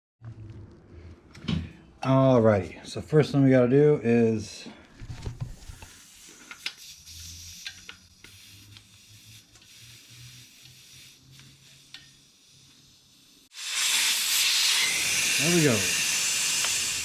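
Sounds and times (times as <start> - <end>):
air hissing out of tyre: 5.6 - 17.0.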